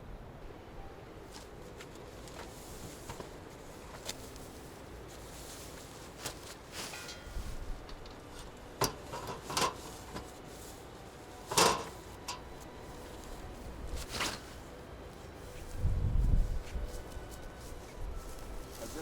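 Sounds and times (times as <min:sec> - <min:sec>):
objects knocking and clattering: 0:11.4 - 0:12.4.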